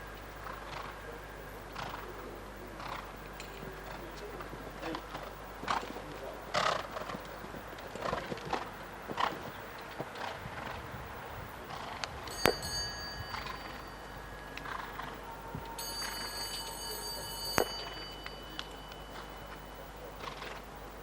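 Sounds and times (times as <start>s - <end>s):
bell ringing: 12.3s - 20.0s.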